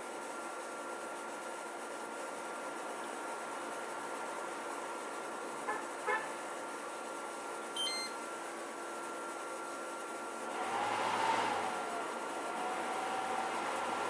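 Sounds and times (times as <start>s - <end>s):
air conditioner humming and whining: 7.7s - 8.3s
short electronic beeps: 7.8s - 8.2s.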